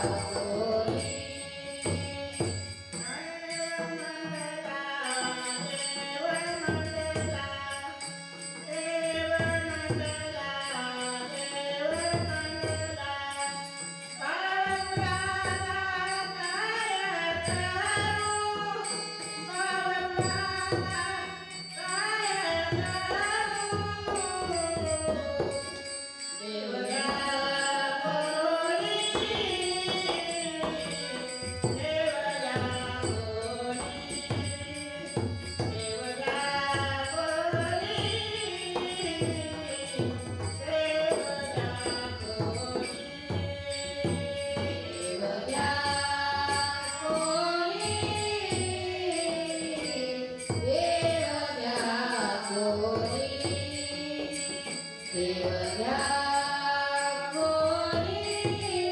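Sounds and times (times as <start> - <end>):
woman singing: 0.0 - 58.9
hand drum: 29.1 - 51.8.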